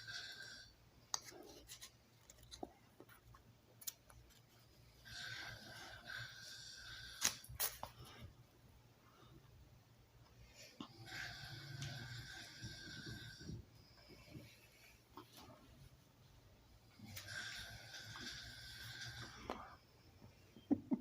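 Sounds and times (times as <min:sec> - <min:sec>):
wheezy whistling snore: 0:11.0 - 0:13.6, 0:17.2 - 0:19.5.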